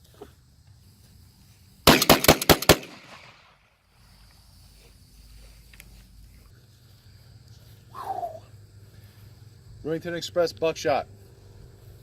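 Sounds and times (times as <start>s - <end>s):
shotgun shots with echo: 1.9s - 3.5s.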